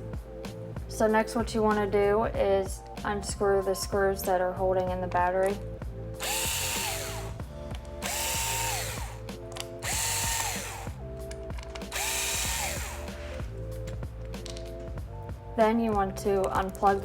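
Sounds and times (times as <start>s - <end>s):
background music: 0.0s - 17.0s
electric screwdriver whine: 6.2s - 7.4s, 8.0s - 11.0s, 11.9s - 13.5s.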